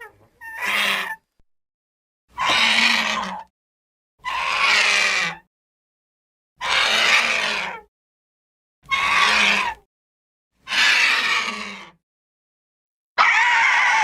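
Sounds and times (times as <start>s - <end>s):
harsh wavering screeching calls: 0.4s - 1.3s, 2.3s - 3.5s, 4.2s - 5.5s, 6.6s - 7.9s, 8.8s - 9.8s, 10.6s - 12.0s, 13.2s - 14.0s.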